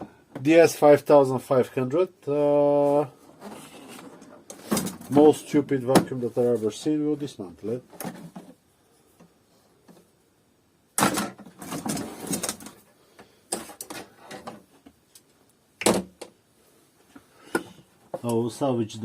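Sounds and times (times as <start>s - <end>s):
plastic parts rattling and clattering: 3.3s - 5.5s, 7.9s - 8.6s, 11.0s - 12.9s, 13.5s - 14.7s.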